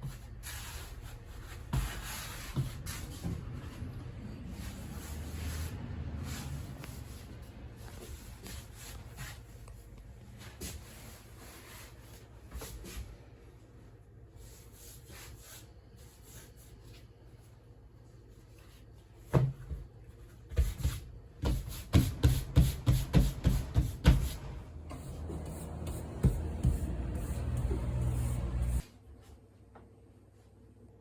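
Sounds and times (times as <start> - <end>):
dough rubbing on board: 20.5 - 28.9.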